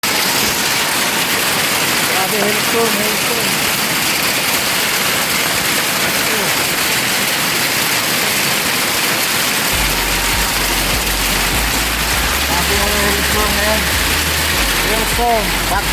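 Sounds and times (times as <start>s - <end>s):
hail and rain pelting: 0.0s - 15.9s
low rumble: 9.8s - 15.9s.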